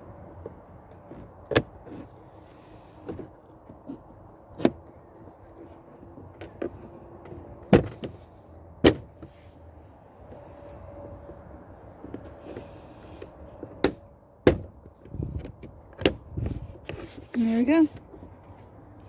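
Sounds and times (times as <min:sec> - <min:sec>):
light clicks and rubbing: 0:14.9 - 0:18.8.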